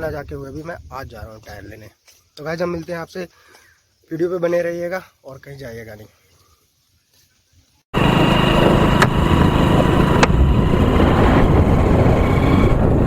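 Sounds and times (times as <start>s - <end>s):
motor vehicle engine and road noise: 8.0s - 13.0s.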